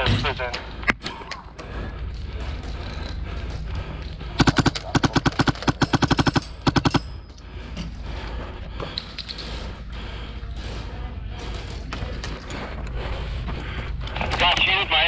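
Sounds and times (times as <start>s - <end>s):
airsoft gun rapid fire: 4.4s - 7.1s.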